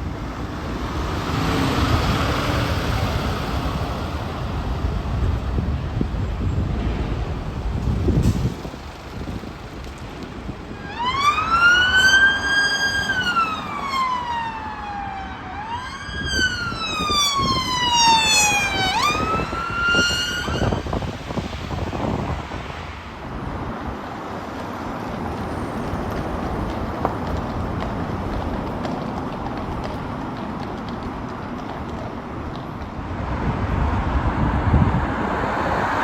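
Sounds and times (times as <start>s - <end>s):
road traffic noise: 0.0s - 36.0s
emergency vehicle siren wailing: 10.5s - 21.2s.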